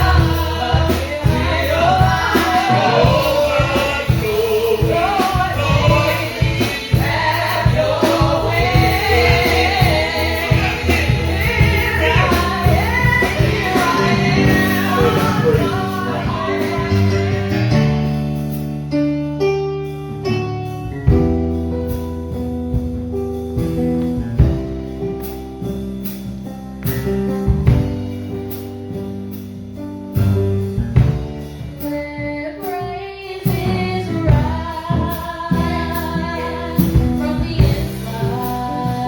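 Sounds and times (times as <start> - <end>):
gospel singing voices: 0.0 - 18.4, 32.2 - 39.0
live band playing: 0.0 - 39.0.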